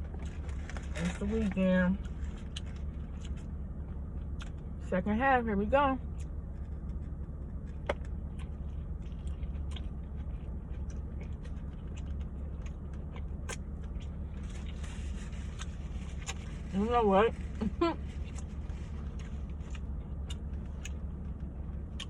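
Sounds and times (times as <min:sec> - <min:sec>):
low rumble: 0:00.0 - 0:22.0
person chewing food: 0:02.0 - 0:04.8, 0:06.1 - 0:16.7, 0:18.0 - 0:22.0.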